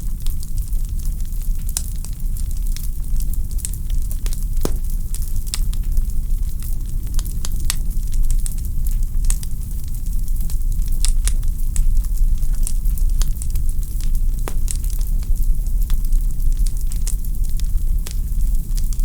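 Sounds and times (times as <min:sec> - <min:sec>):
wood fire crackling: 0:00.0 - 0:19.0
sharp pops of fire: 0:04.2 - 0:05.7, 0:13.2 - 0:15.1.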